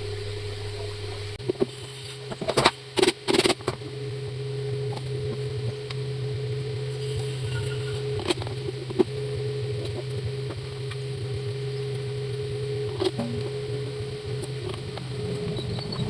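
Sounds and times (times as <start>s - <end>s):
fan motor humming: 0.0s - 16.0s
sharp clicks and knocks: 13.0s - 13.6s.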